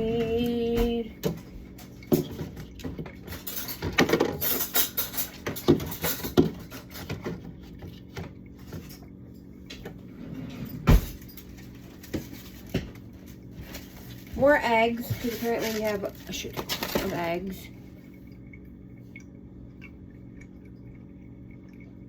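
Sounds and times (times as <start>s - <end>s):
food containers and jars clattering: 0.0s - 9.1s, 10.4s - 17.6s.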